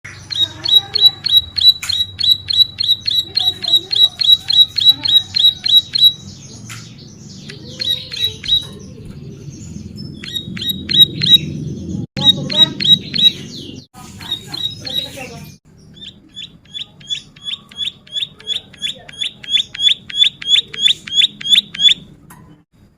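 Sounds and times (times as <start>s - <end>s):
bird singing sharp high notes: 0.1s - 6.2s.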